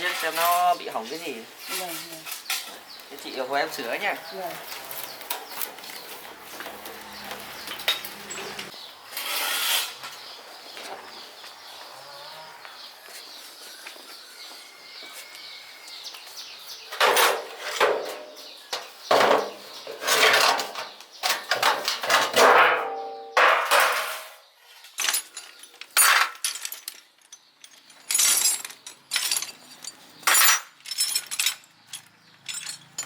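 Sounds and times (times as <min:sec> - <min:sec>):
metal tools clanking and scraping: 0:00.0 - 0:03.5, 0:06.6 - 0:10.0, 0:16.9 - 0:33.0
sharp metal clinks: 0:25.0 - 0:33.0.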